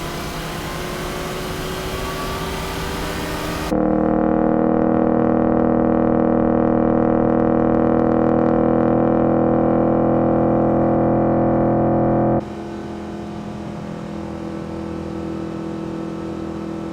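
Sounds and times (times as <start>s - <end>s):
car engine running: 0.0s - 16.9s.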